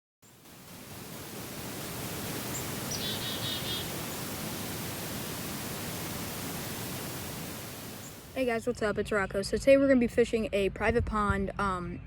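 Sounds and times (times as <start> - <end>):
outdoor background hiss: 0.2 - 8.9
bird trill: 2.4 - 4.0.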